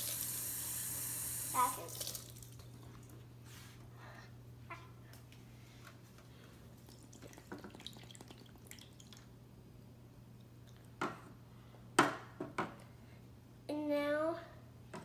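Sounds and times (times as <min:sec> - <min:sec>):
water dripping and trickling: 0:01.6 - 0:02.8, 0:06.8 - 0:09.3.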